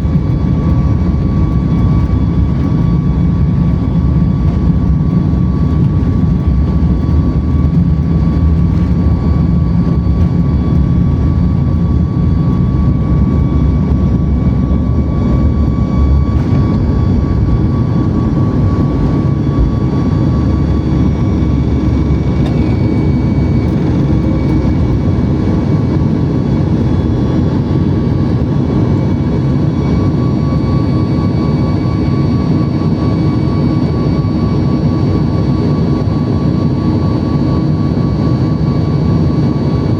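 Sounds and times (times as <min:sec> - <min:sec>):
deep low rumble: 0:00.0 - 0:28.9
jet engines roaring: 0:00.0 - 0:39.9
high whining tones: 0:00.3 - 0:27.0.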